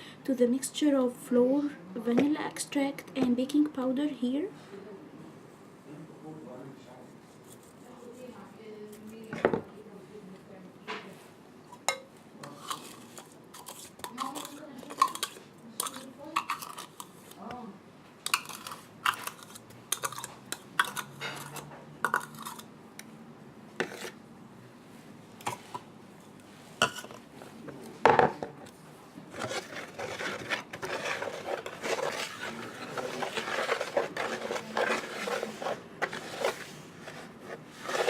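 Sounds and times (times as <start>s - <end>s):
batter being mixed scraping: 6.9s - 9.4s, 11.8s - 17.6s, 18.2s - 22.7s, 23.8s - 24.2s, 29.1s - 38.0s.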